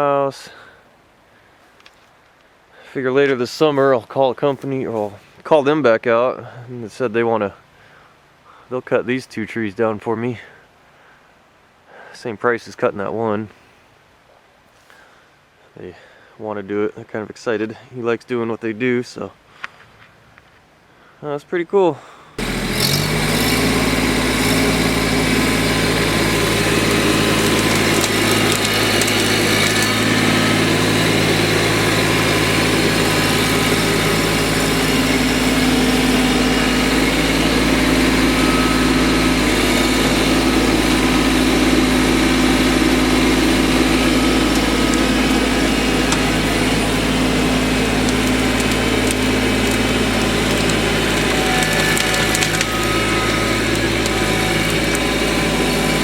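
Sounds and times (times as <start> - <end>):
tractor diesel engine running: 22.4 - 56.0.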